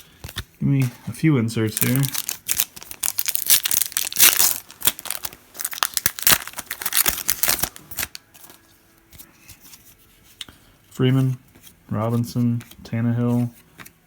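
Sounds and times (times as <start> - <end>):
wrapper tearing and crinkling: 1.6 - 8.6.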